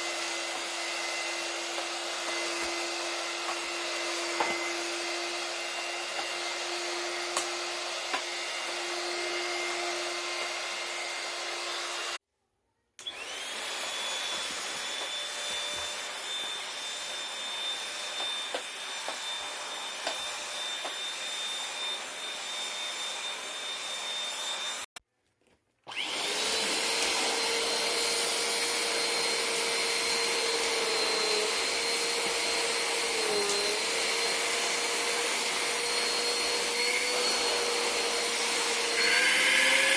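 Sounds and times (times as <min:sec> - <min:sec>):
vacuum cleaner motor whine: 0:00.0 - 0:12.2, 0:13.0 - 0:24.9, 0:25.9 - 0:39.9.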